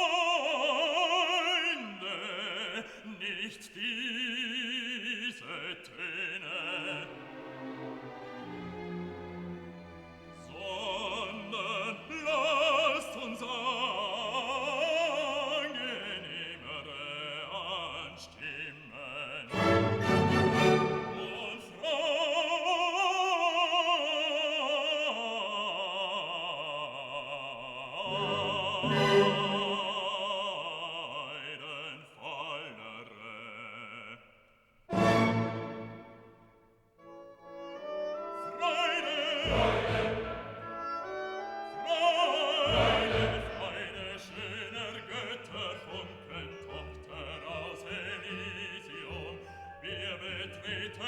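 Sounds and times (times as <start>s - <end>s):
operatic voice singing: 0.0s - 8.6s, 10.3s - 36.2s, 38.1s - 51.0s
classical accompaniment: 5.6s - 18.6s, 19.2s - 25.0s, 28.0s - 31.0s, 34.9s - 51.0s.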